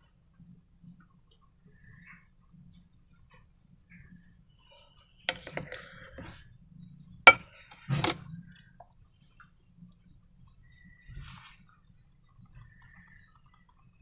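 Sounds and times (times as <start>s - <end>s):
hard objects clicking and knocking: 5.3s - 6.3s, 7.3s - 8.2s.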